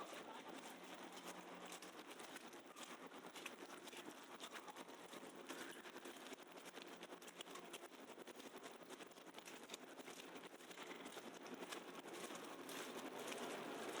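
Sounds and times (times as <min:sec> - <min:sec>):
light irregular crackle: 0:00.0 - 0:14.0
low steady hum: 0:00.0 - 0:14.0.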